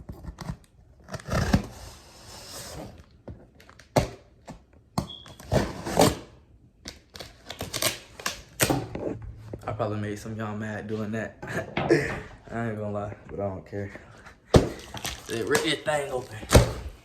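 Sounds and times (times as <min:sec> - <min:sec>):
cardboard tearing: 0:14.6 - 0:17.0.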